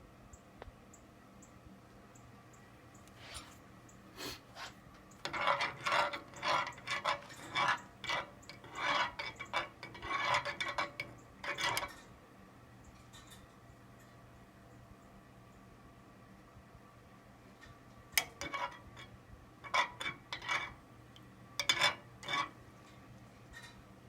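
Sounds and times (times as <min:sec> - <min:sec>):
spoon scraping inside a pot: 0:04.2 - 0:12.0, 0:18.2 - 0:23.8.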